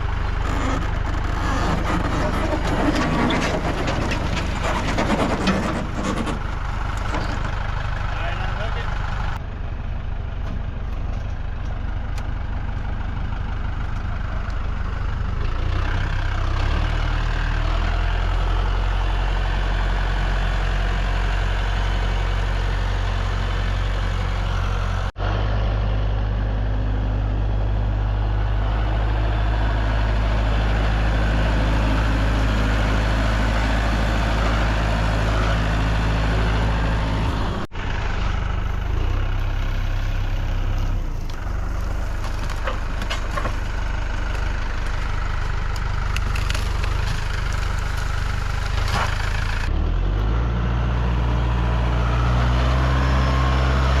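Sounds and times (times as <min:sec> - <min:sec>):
heavy vehicle engine running: 0:00.0 - 0:54.0.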